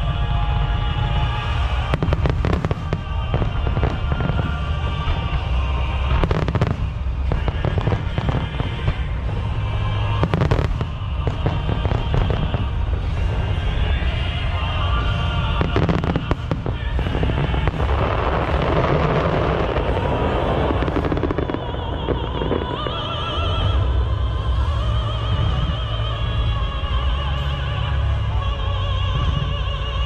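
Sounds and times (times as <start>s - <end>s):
continuous low rumble: 0.0s - 30.0s
fireworks crackling bangs: 1.3s - 23.9s.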